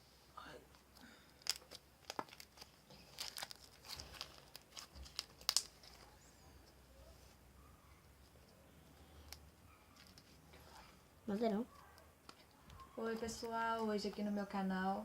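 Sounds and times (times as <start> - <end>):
crinkling and clicking being handled: 0.7 - 6.8, 8.3 - 10.7, 11.7 - 14.3.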